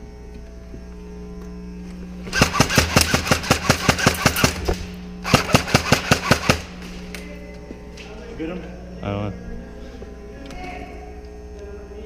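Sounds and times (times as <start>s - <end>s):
airsoft rifle rapid shots: 2.3s - 6.8s.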